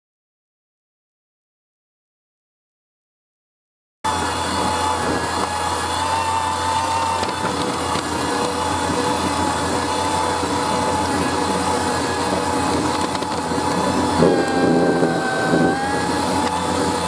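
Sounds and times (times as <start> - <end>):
shredder motor whining and grinding: 4.1 - 17.0.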